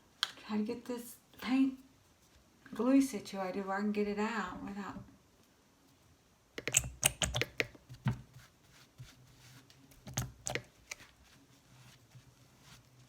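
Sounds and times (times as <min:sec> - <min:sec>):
small plastic items clicking: 0:06.6 - 0:07.8.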